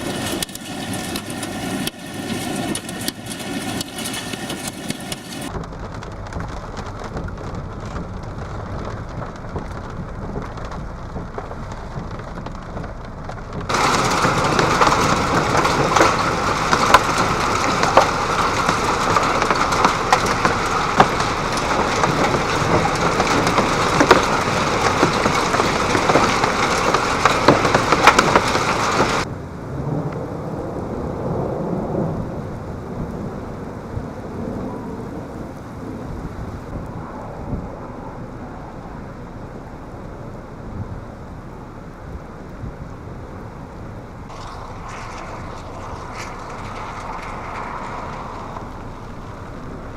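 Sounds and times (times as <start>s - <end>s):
hailstones striking: 0.0s - 29.3s, 44.3s - 49.9s
heavy rain downpour: 0.0s - 49.9s
wind: 0.0s - 49.9s.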